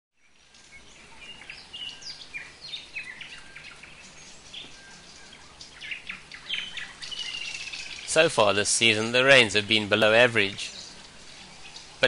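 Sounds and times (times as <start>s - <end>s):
birds chirping: 0.2s - 12.0s
rain falling: 0.4s - 12.0s.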